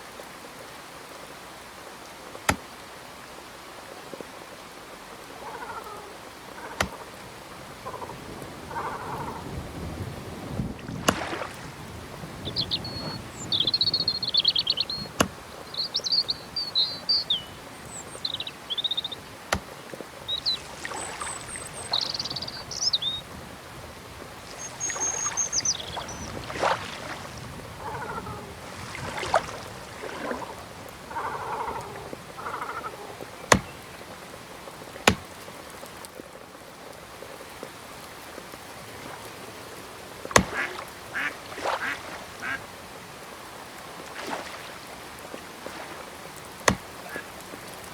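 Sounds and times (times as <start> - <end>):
small birds chirping: 11.9 - 28.5, 31.2 - 35.5, 40.1 - 42.6, 45.8 - 47.9
ducks quacking: 27.8 - 28.7, 40.3 - 42.7, 46.6 - 47.4.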